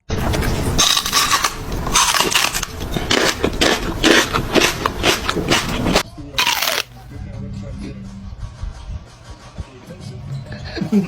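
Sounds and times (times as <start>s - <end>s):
crunching and rustling: 0.1s - 7.1s.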